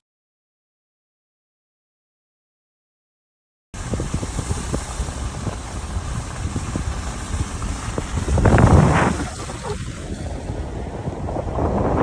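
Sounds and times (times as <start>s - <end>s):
wind buffeting microphone: 3.8s - 12.0s.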